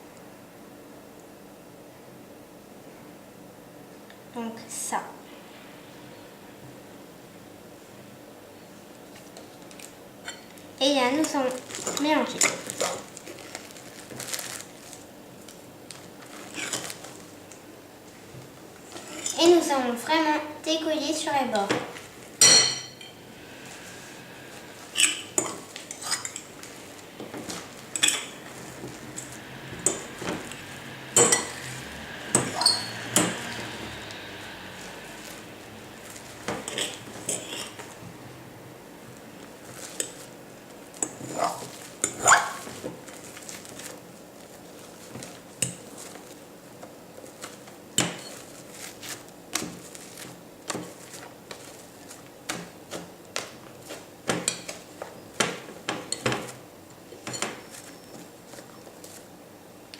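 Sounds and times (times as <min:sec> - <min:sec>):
utensil stirring slime in bowl: 0:16.2 - 0:17.3, 0:21.5 - 0:38.0, 0:47.2 - 0:59.3.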